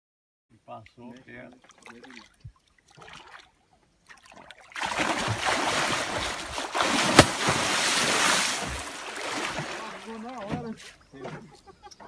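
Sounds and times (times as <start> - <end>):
water splashing and churning: 1.5 - 10.9
sharp knock: 7.1 - 7.6.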